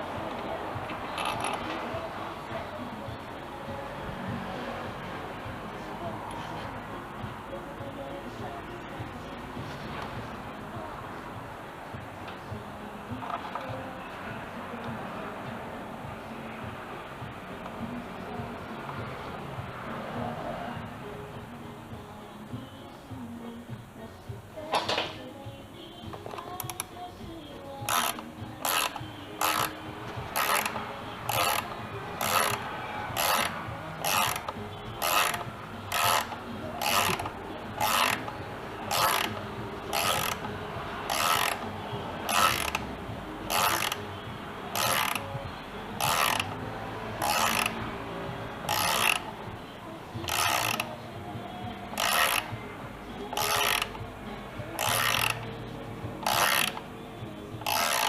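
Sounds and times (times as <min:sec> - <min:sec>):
ratchet wrench clicking: 0:00.8 - 0:02.2, 0:26.1 - 0:27.0, 0:27.8 - 0:42.9, 0:43.5 - 0:44.1, 0:44.7 - 0:49.4, 0:50.2 - 0:51.0, 0:51.8 - 0:52.6, 0:53.2 - 0:54.1, 0:54.8 - 0:56.9, 0:57.6 - 0:58.0.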